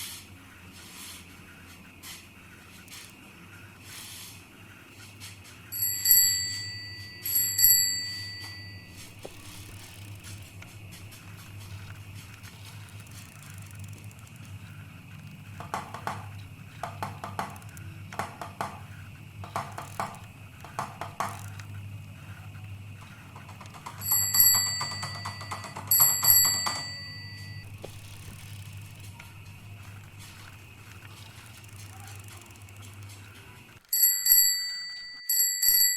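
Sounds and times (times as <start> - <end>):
steady low hum: 0.0 - 33.9
bicycle rattling: 0.0 - 35.9
bicycle bell ringing: 5.7 - 10.2, 23.9 - 27.7, 33.9 - 35.9.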